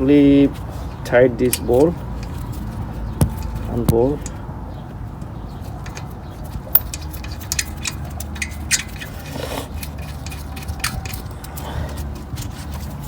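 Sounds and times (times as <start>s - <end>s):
steady low hum: 1.6s - 13.0s
wrench clicking on metal: 5.8s - 12.3s.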